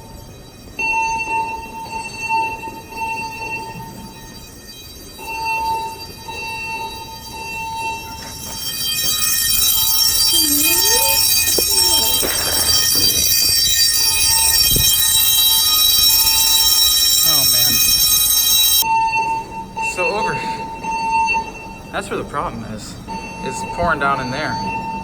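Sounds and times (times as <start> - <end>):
fire alarm horns: 0.0 - 25.0.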